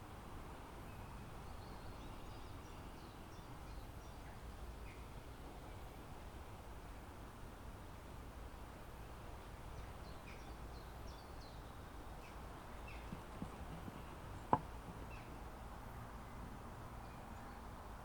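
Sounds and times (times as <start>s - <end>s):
low outdoor rumble: 12.0s - 18.0s.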